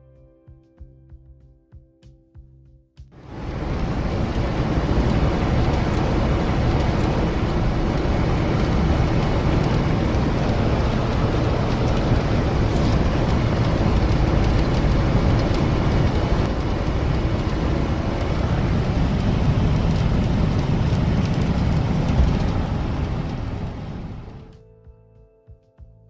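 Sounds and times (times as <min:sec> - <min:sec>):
low rumbling noise: 0:03.2 - 0:24.6
hiss: 0:03.4 - 0:19.3.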